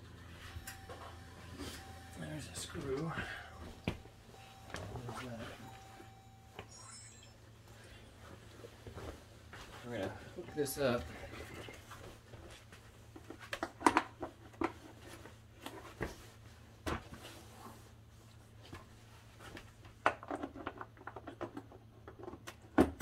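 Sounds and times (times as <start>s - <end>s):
faint low hum: 0.0s - 13.4s.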